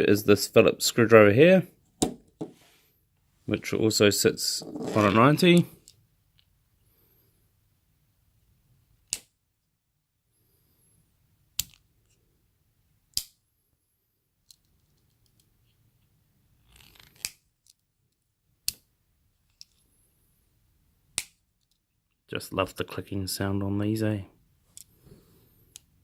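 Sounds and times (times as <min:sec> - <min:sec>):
handling rustle: 0:04.6 - 0:05.7.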